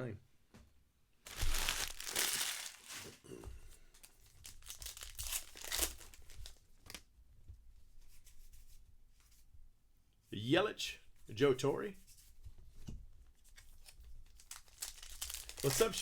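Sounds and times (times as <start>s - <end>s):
card pack wrapper tearing: 1.3s - 3.2s, 4.4s - 7.0s, 14.3s - 16.0s.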